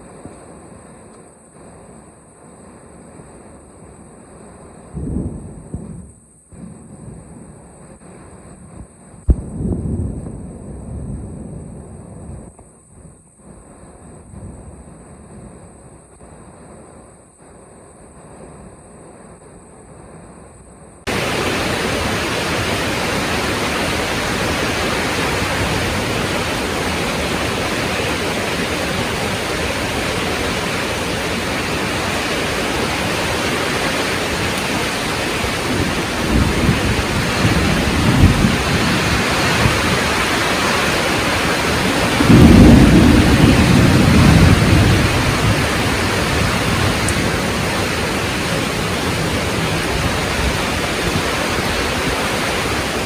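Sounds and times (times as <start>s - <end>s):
thunder rumbling: 9.3s - 12.5s, 21.1s - 53.0s
heavy rain: 21.1s - 53.0s.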